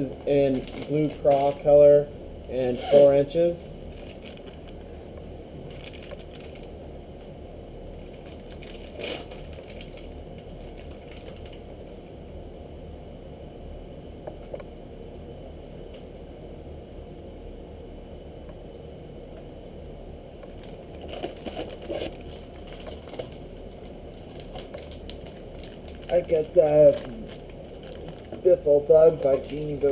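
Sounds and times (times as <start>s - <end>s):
low background hum: 0.0s - 29.9s
plastic packaging crinkling: 0.5s - 1.6s, 3.8s - 4.9s, 5.6s - 7.3s, 8.0s - 11.6s, 20.6s - 29.9s.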